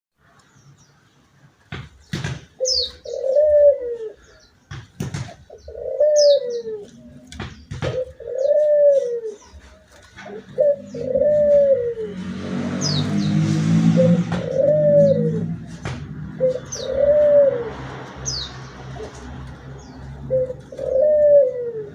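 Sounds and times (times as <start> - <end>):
small bird chirping: 2.0 - 3.2
dove cooing: 2.6 - 4.5, 5.2 - 21.9.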